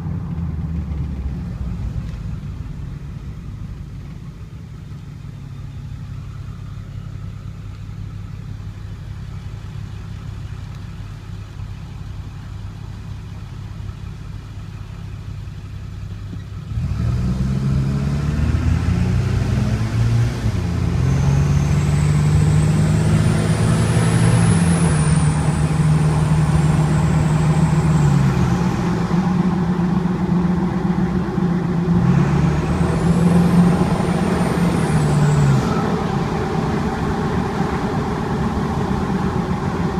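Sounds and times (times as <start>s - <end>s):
diesel engine revving: 16.5s - 39.9s.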